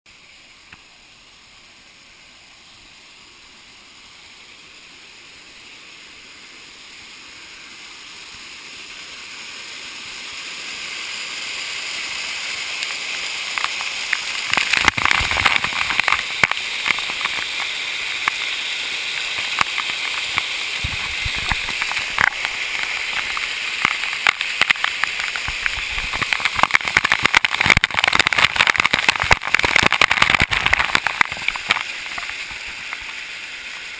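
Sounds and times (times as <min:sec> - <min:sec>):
waterfall rushing: 0:00.2 - 0:33.9
water splashing: 0:10.8 - 0:33.9.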